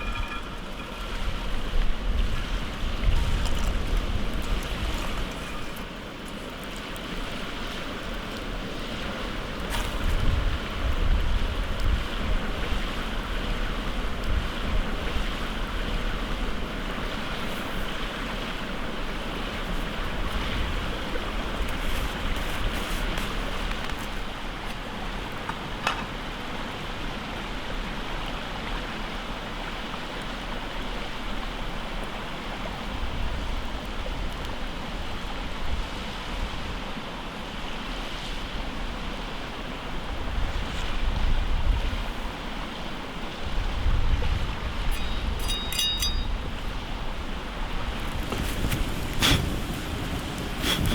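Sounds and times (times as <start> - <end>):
wind buffeting microphone: 43.4 - 50.9.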